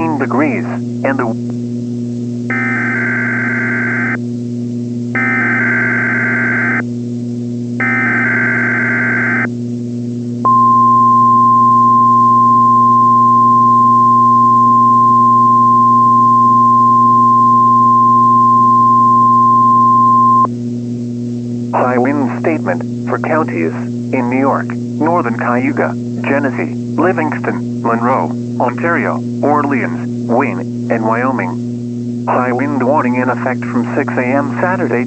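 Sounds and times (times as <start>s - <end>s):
radio hum: 0.0s - 1.6s, 10.5s - 20.5s, 21.7s - 35.0s
steady high alert tone: 10.5s - 20.5s, 32.3s - 33.3s
warbling data tones: 32.3s - 33.3s.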